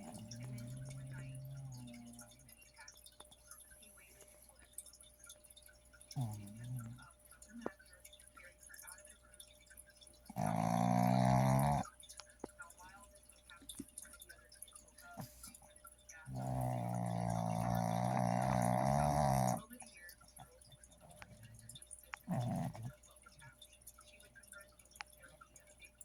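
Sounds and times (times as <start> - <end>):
dog snoring loudly: 0.0 - 2.4, 6.2 - 7.0, 10.3 - 11.9, 16.2 - 19.8, 21.0 - 23.0.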